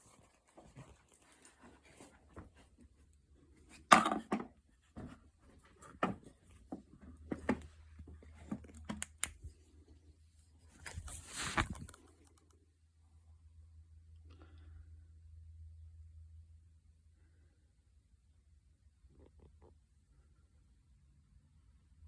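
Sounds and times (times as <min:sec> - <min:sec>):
scraping rustle: 0:10.6 - 0:12.1.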